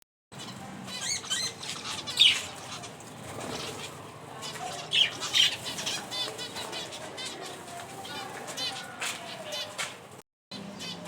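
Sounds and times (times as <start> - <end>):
birds chirping: 0.4 - 11.0.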